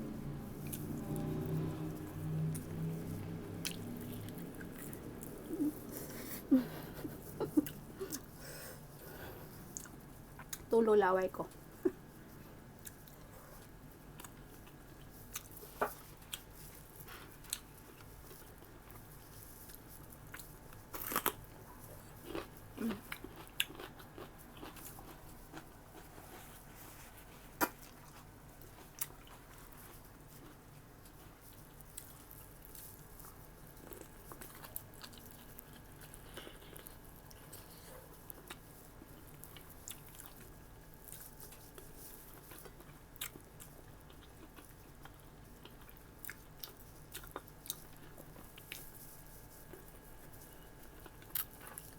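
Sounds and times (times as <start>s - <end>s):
person chewing and biting: 19.6s - 26.7s, 31.4s - 50.0s, 50.7s - 51.9s.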